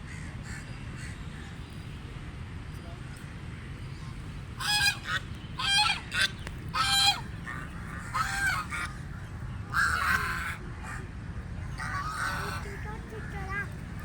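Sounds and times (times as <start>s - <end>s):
low background rumble: 2.8s - 14.0s
ducks quacking loudly: 4.6s - 9.0s.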